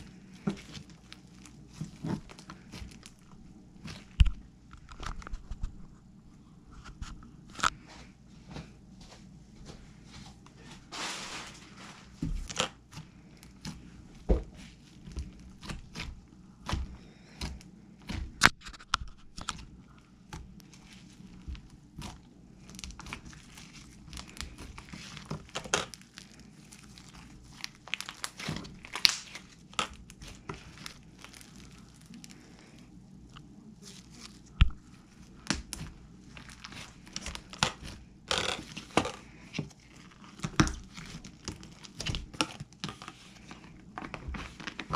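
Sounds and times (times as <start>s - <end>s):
slime popping and crackling: 0.0s - 4.4s, 20.3s - 32.7s, 33.8s - 43.3s
slime squishing and tearing: 0.0s - 4.4s, 12.2s - 44.9s.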